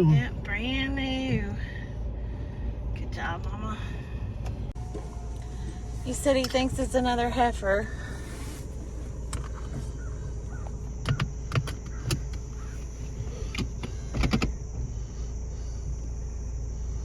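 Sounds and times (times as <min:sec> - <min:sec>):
insects droning: 0:00.0 - 0:17.0
vehicle engine idling: 0:00.0 - 0:17.0
sharp clicks and knocks: 0:10.6 - 0:12.5, 0:13.5 - 0:14.5.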